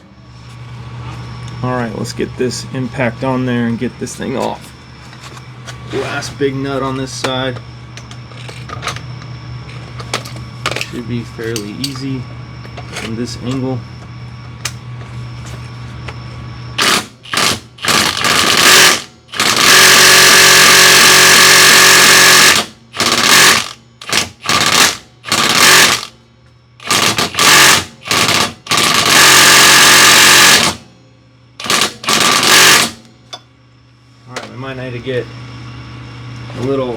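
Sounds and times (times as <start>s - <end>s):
impact wrench hammering: 16.8s - 26.1s, 26.8s - 30.8s, 31.6s - 33.0s.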